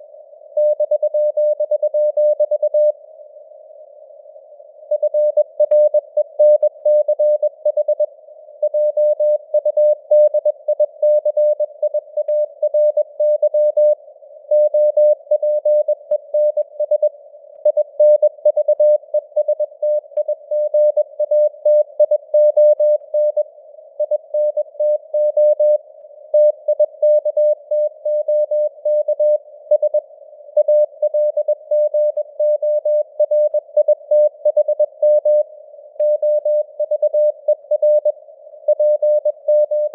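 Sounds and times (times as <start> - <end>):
morse code beeps: 36.0 - 38.1.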